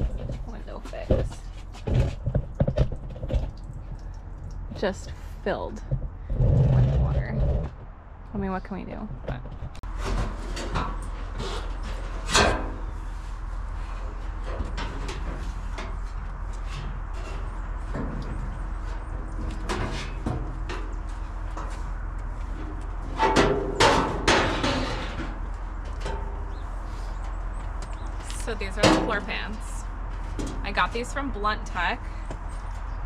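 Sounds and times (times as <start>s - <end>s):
sharp knocks and clunks: 0.0s - 4.0s.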